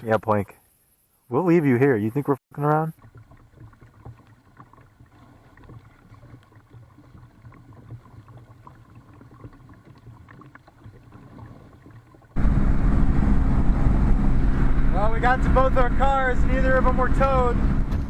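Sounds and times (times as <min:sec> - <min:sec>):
faint water sounds: 0:00.0 - 0:18.0
loud low rumble with hum: 0:12.4 - 0:18.0.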